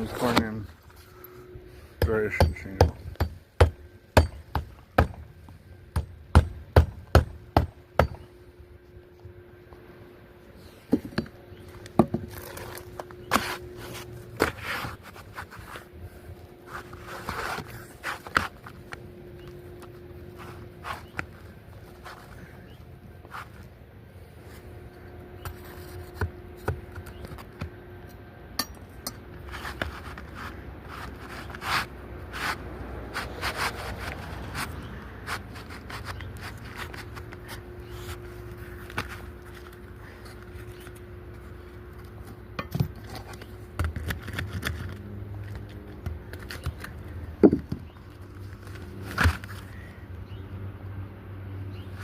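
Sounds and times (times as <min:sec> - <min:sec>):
roofing tools scraping shingles: 0:12.2 - 0:18.8.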